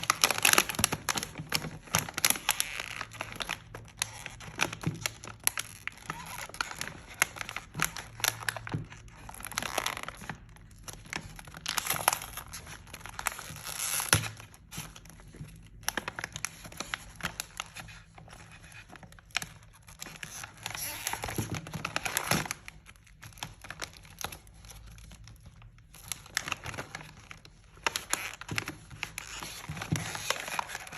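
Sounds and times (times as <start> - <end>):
plastic packaging crinkling: 0.0 - 30.9.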